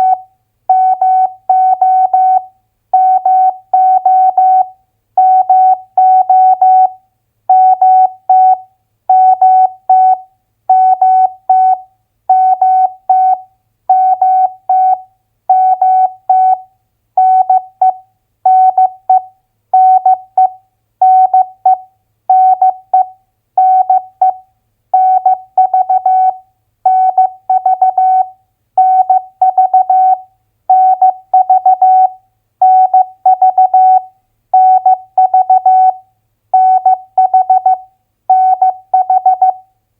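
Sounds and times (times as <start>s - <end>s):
morse code beeps: 36.6s - 39.6s.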